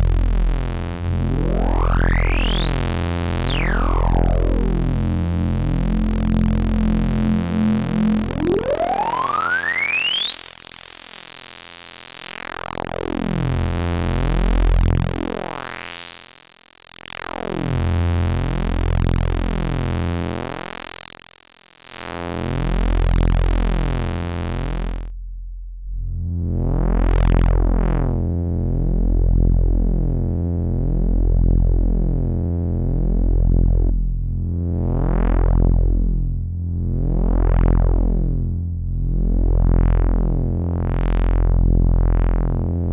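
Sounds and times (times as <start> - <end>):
low buzzy pulsing synth notes: 0.0 - 15.9, 17.1 - 21.1, 21.9 - 42.9
resonant synth tone gliding upward: 1.4 - 11.3.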